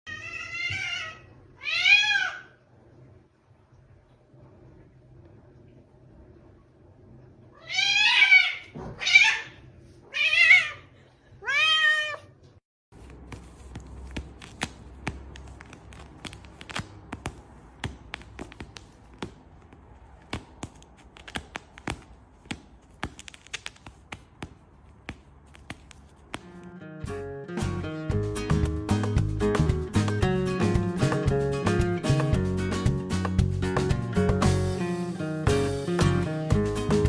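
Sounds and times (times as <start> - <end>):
cat meowing loudly: 0.1 - 2.6, 7.5 - 12.4.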